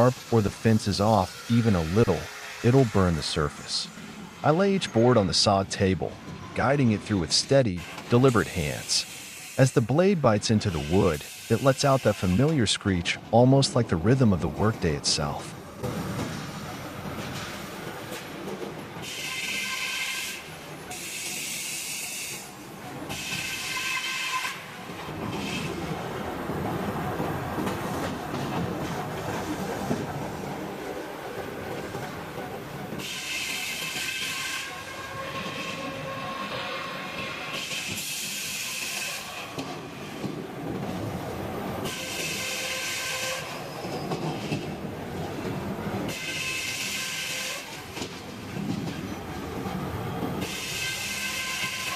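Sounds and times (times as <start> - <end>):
saw machine running: 0.0 - 4.4.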